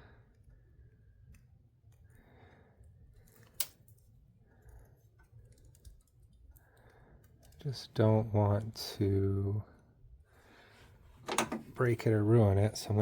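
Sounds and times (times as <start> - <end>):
faint clicks and handling noise: 0.3 - 8.0.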